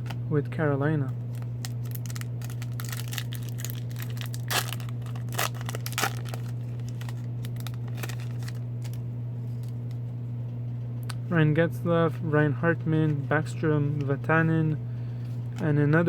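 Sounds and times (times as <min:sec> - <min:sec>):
steady low hum: 0:00.0 - 0:16.0
wrapper tearing and crinkling: 0:01.3 - 0:09.8.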